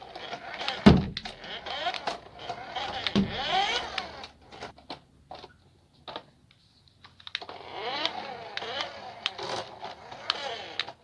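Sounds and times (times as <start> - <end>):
toy car electric motor whining: 0.0 - 4.7, 7.4 - 11.0.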